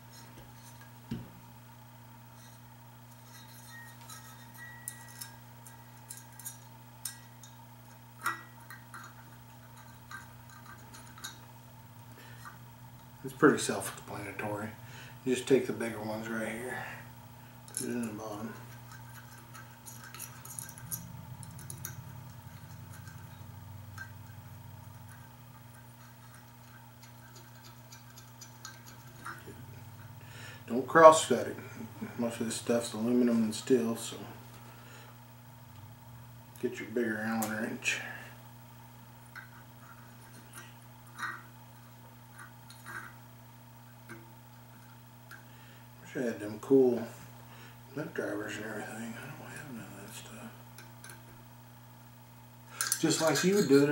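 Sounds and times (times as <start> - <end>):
steady low hum: 0.0 - 53.9
small metal parts clicking: 3.2 - 7.6, 17.7 - 23.4, 24.0 - 29.5, 52.8 - 53.8.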